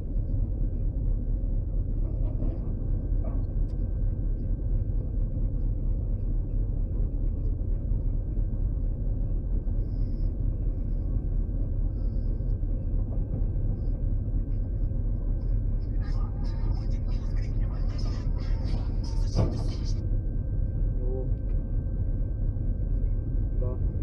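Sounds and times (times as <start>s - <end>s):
bus engine running steadily: 0.0s - 24.0s.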